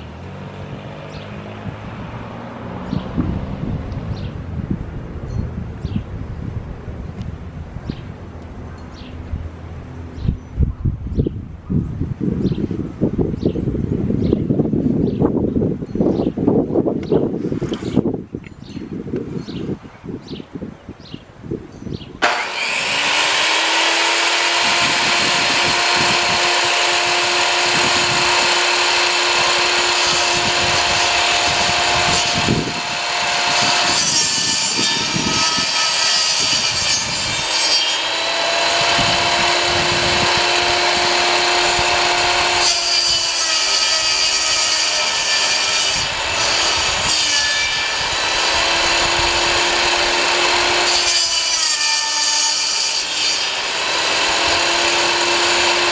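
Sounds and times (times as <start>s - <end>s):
saw blade grinding into wood: 17.4s - 18.1s, 22.2s - 55.9s.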